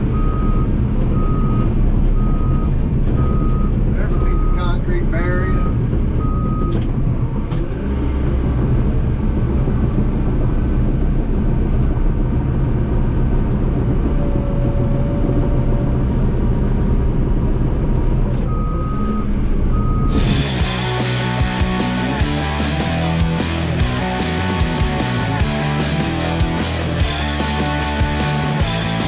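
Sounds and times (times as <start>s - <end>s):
heavy diesel engine under load: 0.0s - 29.0s
backup alarm beeps: 0.1s - 4.8s, 5.4s - 6.8s, 18.5s - 20.2s
music: 20.1s - 29.0s.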